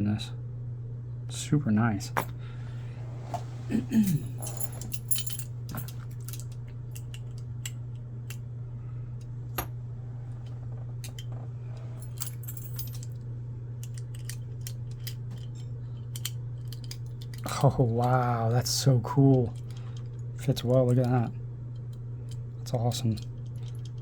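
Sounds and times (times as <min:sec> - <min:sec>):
steady low hum: 0:00.0 - 0:24.0
metallic clicks and jingles: 0:04.0 - 0:07.2, 0:12.0 - 0:13.1.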